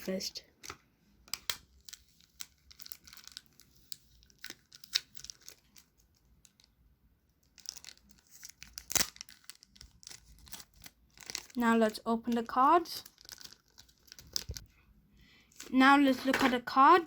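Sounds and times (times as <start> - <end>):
packaging tearing and crinkling: 1.3 - 6.7, 7.5 - 11.6, 13.0 - 14.7.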